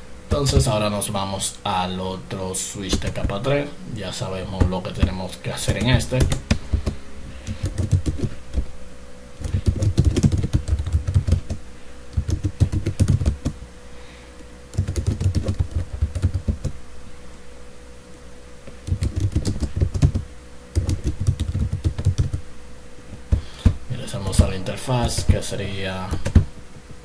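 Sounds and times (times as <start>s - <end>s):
faint steady hum: 0.0s - 27.0s
keyboard typing: 2.9s - 3.4s, 4.6s - 8.6s, 9.4s - 13.6s, 14.7s - 16.8s, 18.8s - 22.4s, 26.0s - 26.5s.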